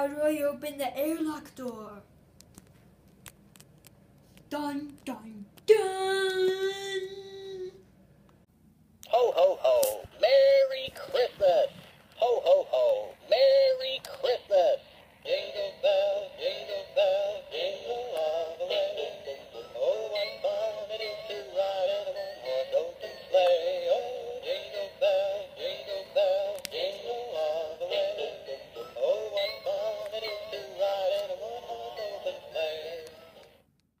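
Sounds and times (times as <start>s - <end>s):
synthetic sung melody: 9.0s - 33.6s.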